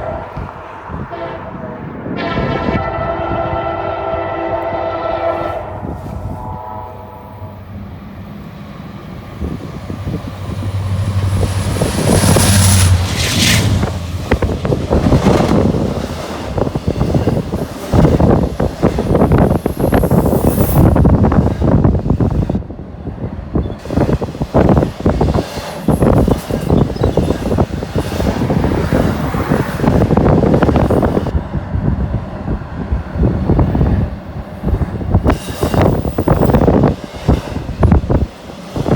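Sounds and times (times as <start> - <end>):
diesel locomotive engines droning: 0.0 - 38.9
wind buffeting microphone: 0.0 - 38.9
high whine: 4.5 - 8.0
train wheels clattering on rails: 9.4 - 22.5, 23.6 - 31.3.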